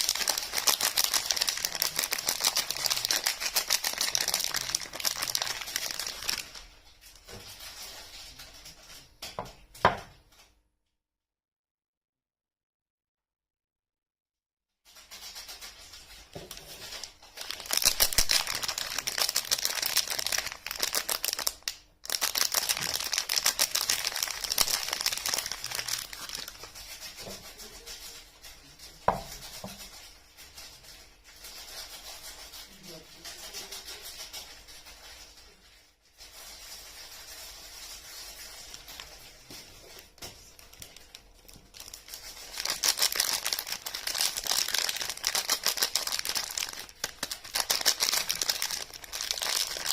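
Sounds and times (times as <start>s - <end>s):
soap wrapping crinkling and tearing: 0.0s - 7.3s, 16.4s - 27.0s, 36.6s - 49.9s.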